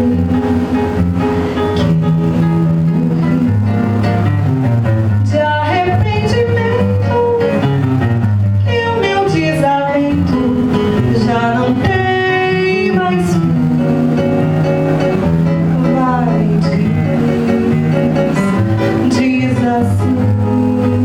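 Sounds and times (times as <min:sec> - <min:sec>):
nylon-string acoustic guitar: 0:00.0 - 0:21.0
woman singing: 0:05.2 - 0:07.9, 0:08.6 - 0:14.4, 0:15.4 - 0:21.0.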